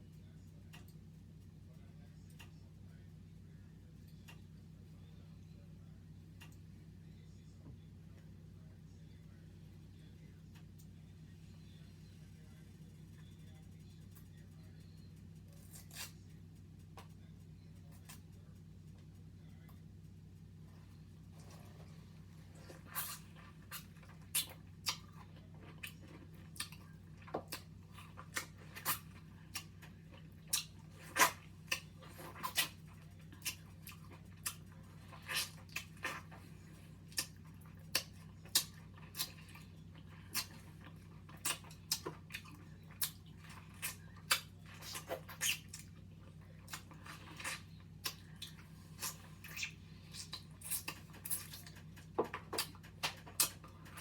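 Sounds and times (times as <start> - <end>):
steady low hum: 0.0 - 54.0
person eating mango: 22.5 - 54.0.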